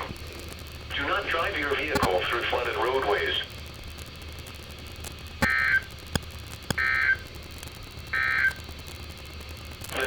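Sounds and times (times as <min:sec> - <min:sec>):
sharp clicks: 0:01.8 - 0:02.2, 0:03.5 - 0:10.0
digital data tone bursts: 0:05.4 - 0:05.9, 0:06.8 - 0:07.2, 0:08.1 - 0:08.6.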